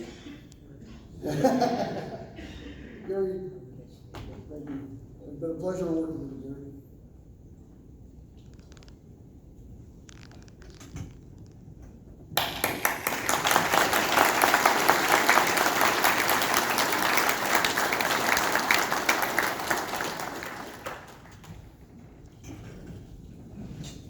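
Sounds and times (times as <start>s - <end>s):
audience applauding: 12.4s - 21.9s.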